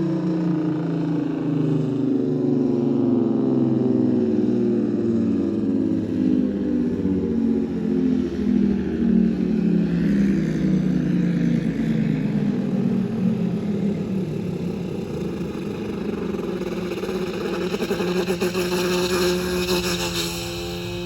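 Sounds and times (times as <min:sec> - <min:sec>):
vehicle engine running: 0:12.3 - 0:21.0.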